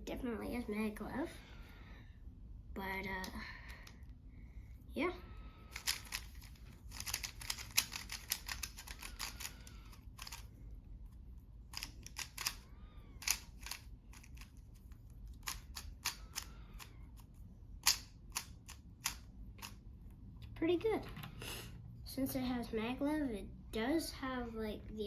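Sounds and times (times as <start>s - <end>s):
plastic puzzle cube clicking: 5.7s - 10.5s, 11.7s - 12.6s, 13.2s - 14.6s, 15.3s - 19.8s.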